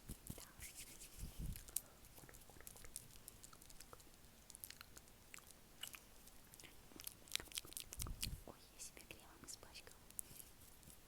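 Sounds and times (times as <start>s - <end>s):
wet lip and tongue clicks: 1.5s - 8.4s.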